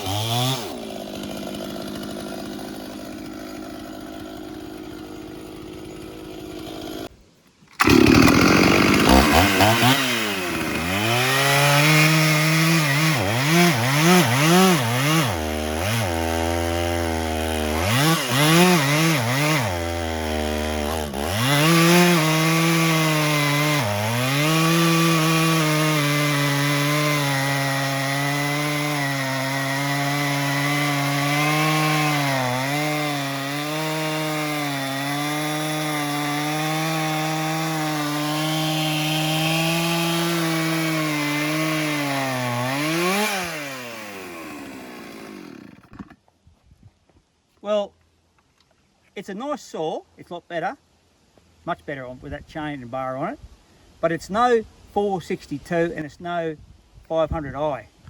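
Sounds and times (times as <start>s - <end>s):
chainsaw cutting timber: 0.0s - 7.1s, 7.7s - 46.2s.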